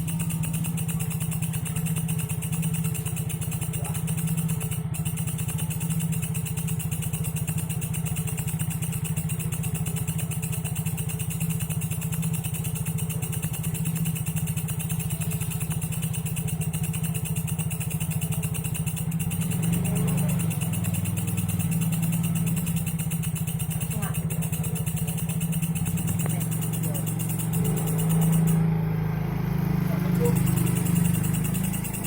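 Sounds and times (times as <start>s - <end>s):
katydid buzzing trill: 25.4s - 28.6s, 30.1s - 32.0s.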